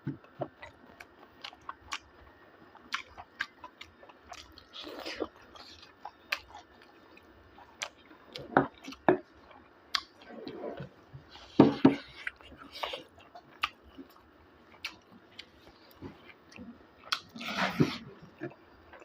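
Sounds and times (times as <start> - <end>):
person chewing and mouth smacks: 0.3 - 10.3, 11.3 - 19.0.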